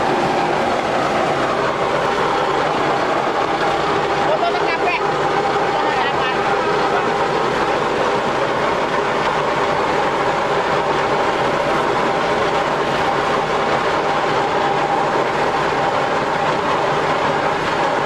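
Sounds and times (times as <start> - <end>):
road roller engine droning: 0.0 - 18.0.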